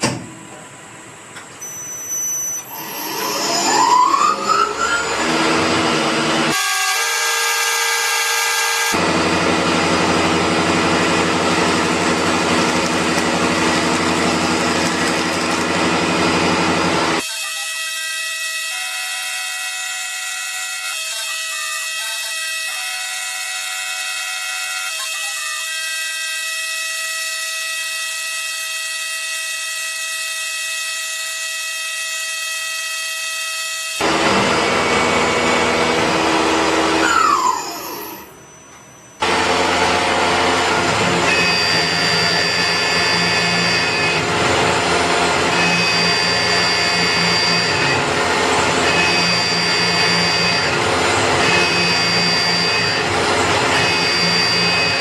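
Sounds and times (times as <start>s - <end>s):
high-pitched machine whine: 0.0s - 55.0s
machining noise: 1.6s - 18.2s, 34.0s - 55.0s.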